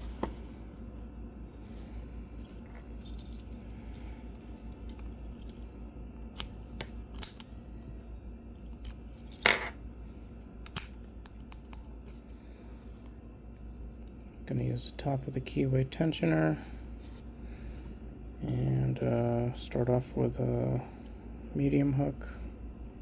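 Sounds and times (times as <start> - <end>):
padlock rattling: 3.1 - 3.6, 4.4 - 6.5, 7.2 - 7.6, 8.7 - 9.7, 10.7 - 11.9
metallic clicks of lock picks: 4.4 - 6.6, 7.2 - 7.6, 8.7 - 9.5, 10.7 - 11.9.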